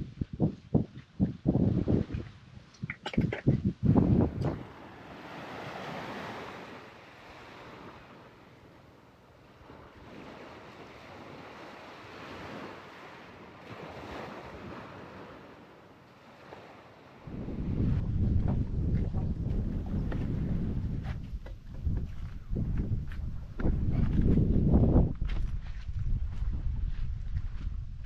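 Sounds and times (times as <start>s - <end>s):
small waves washing on shore: 1.6s - 18.6s.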